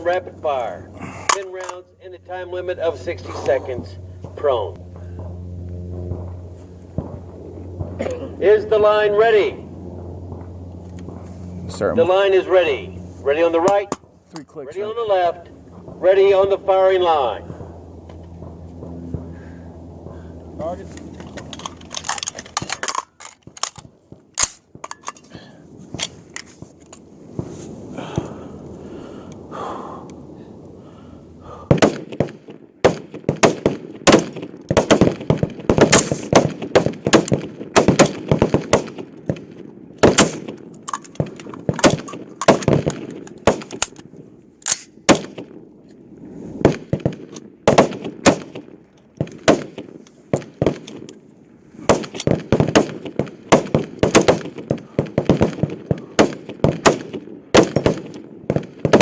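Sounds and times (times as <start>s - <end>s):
rifles firing rapidly: 31.7s - 39.1s, 40.0s - 44.0s, 46.6s - 48.6s, 49.3s - 51.1s, 51.9s - 59.0s.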